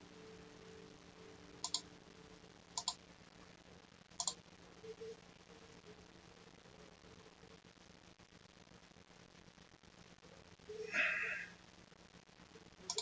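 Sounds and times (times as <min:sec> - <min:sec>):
computer mouse clicking: 0:01.6 - 0:01.8, 0:02.8 - 0:03.0, 0:04.2 - 0:04.4.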